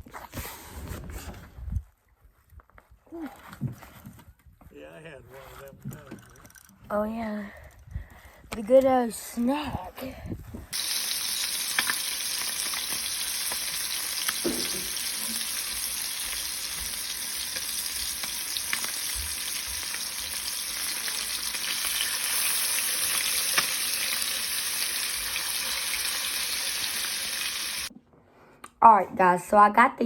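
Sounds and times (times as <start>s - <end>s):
fish frying in oil: 10.8s - 27.9s.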